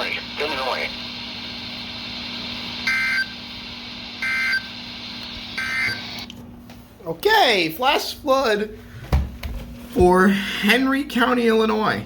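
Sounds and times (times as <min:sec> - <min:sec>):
radio hiss and hum: 0:00.0 - 0:06.3
two-tone digital data bursts: 0:04.2 - 0:04.7, 0:05.5 - 0:06.2.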